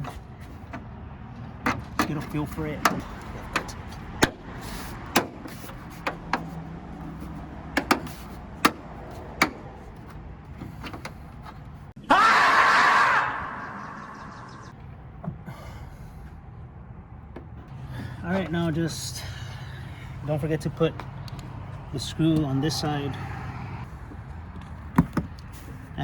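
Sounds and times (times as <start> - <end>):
squeaky plastic scraping: 0.0 - 0.9.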